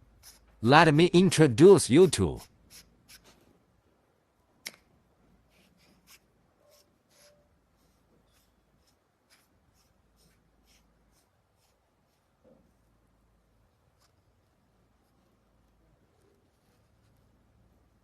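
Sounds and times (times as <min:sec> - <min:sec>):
soft rubbing: 0:13.8 - 0:18.0.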